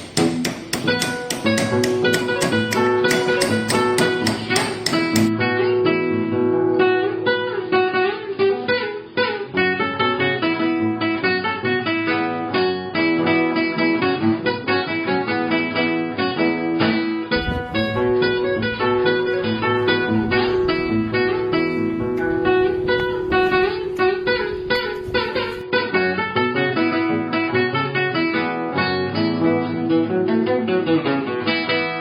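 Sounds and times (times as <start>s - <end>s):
regular tapping: 0.0s - 5.3s, 17.5s - 25.6s
acoustic guitar music: 0.0s - 32.0s.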